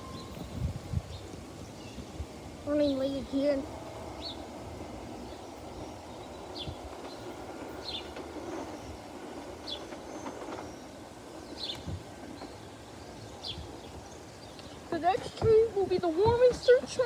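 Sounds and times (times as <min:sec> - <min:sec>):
train wheels rumbling on rails: 0:00.0 - 0:17.0
bird chirping: 0:04.1 - 0:14.9.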